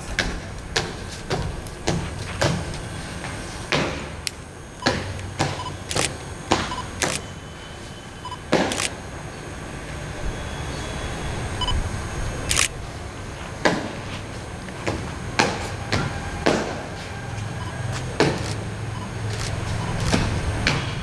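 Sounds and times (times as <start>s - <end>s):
sharp clicks: 4.2s - 7.2s, 8.6s - 9.0s, 12.4s - 12.8s, 18.4s - 20.3s.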